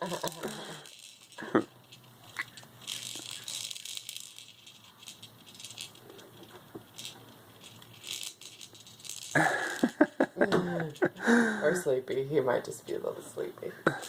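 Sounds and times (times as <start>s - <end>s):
baby bouncer toys rattling: 0.0s - 10.2s.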